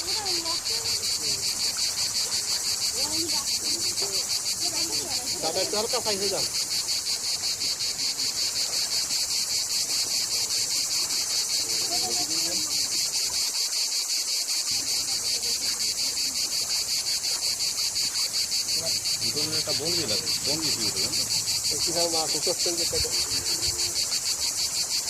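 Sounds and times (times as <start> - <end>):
insects chirring: 0.0 - 25.0.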